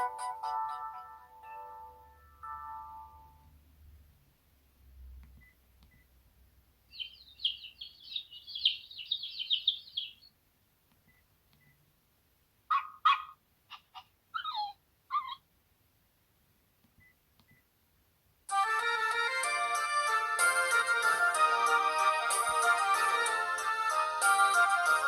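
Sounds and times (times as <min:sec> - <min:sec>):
birdsong ringtone chirping: 0:06.9 - 0:10.3, 0:14.4 - 0:15.4.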